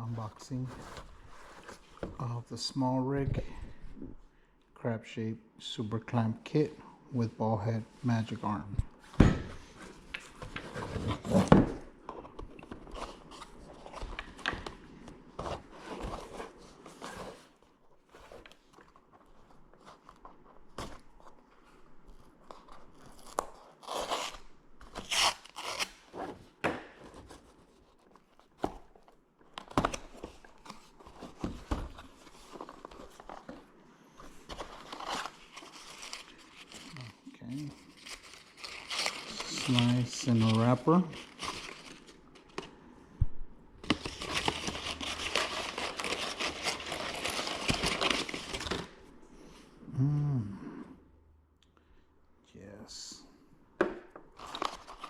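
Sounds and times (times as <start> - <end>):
plastic wrappers crinkling: 34.5 - 42.6, 43.9 - 49.0.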